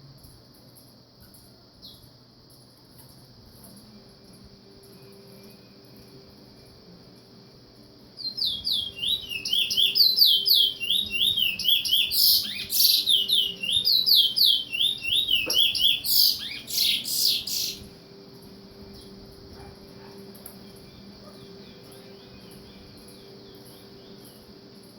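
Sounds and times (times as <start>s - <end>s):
bird chirping: 8.2s - 18.0s, 18.8s - 24.9s
harsh bird calls: 8.2s - 18.0s.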